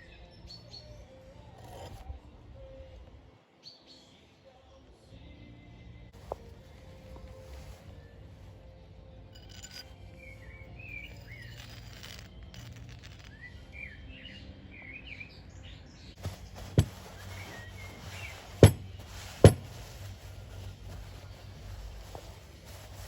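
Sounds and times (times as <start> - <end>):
sharp knocks: 16.2 - 17.1, 18.6 - 19.8.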